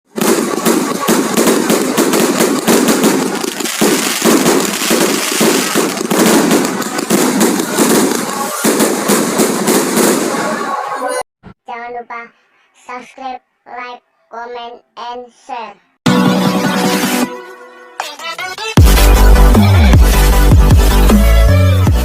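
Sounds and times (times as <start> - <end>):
fireworks and firecrackers popping: 0.1 - 10.6.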